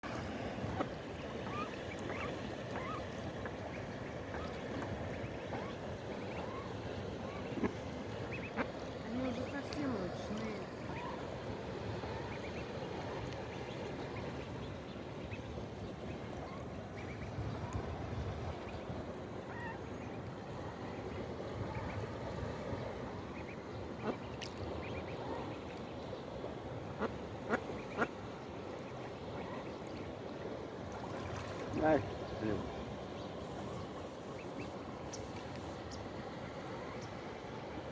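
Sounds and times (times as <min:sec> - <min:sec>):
ducklings peeping: 0:00.6 - 0:11.3, 0:12.0 - 0:17.4, 0:18.5 - 0:18.9, 0:19.5 - 0:20.2, 0:21.2 - 0:22.0, 0:23.3 - 0:25.9, 0:27.0 - 0:28.1, 0:28.7 - 0:30.1.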